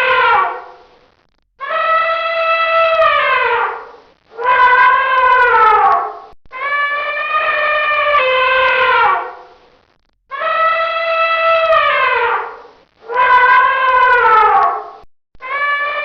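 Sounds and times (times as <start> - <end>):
elephant trumpeting: 1.6 - 9.5, 10.4 - 14.9.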